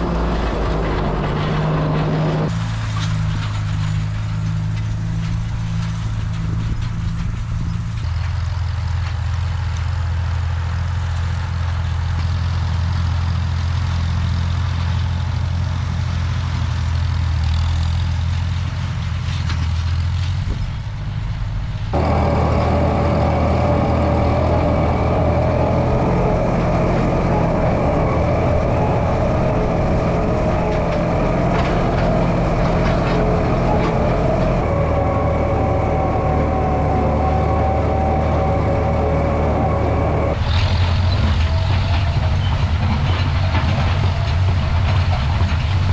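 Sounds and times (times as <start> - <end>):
tractor engine running: 0.0 - 45.9
loud bright machine running: 21.9 - 29.7.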